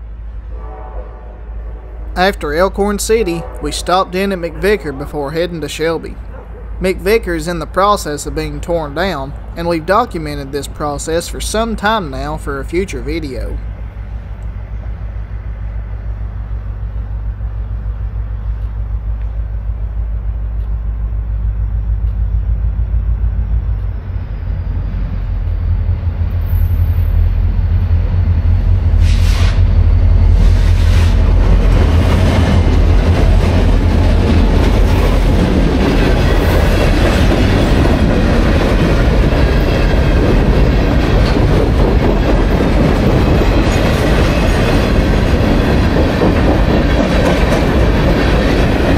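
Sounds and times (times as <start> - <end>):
diesel locomotive engines droning: 0.0 - 48.9
freight cars rumbling by: 2.0 - 48.9
wheels clicking over rail joints: 31.4 - 48.9.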